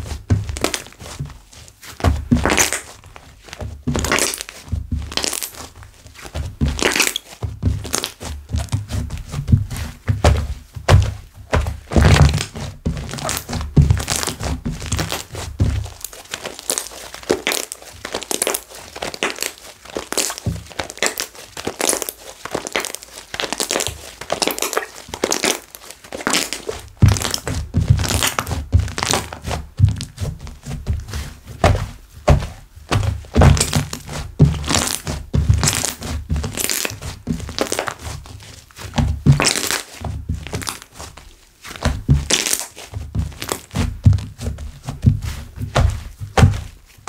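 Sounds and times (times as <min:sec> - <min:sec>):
fine crackling of slime: 0:00.0 - 0:47.0
soft low thuds: 0:07.4 - 0:16.0, 0:27.0 - 0:36.5, 0:43.0 - 0:46.9.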